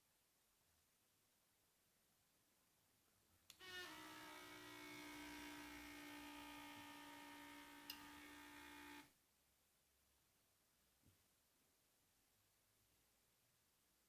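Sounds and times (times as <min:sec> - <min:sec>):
vibration motor buzzing: 0:03.6 - 0:09.1.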